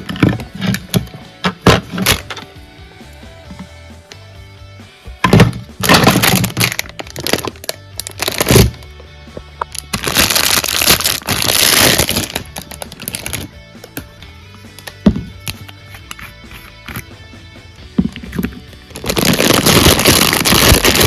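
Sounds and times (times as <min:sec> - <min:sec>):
background music: 0:00.0 - 0:21.0
packaging crackling and tearing: 0:05.8 - 0:08.8, 0:09.7 - 0:13.5, 0:18.3 - 0:21.0.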